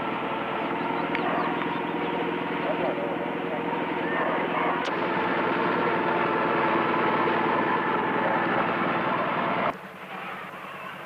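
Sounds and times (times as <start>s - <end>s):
boat engine running: 0.0s - 11.0s.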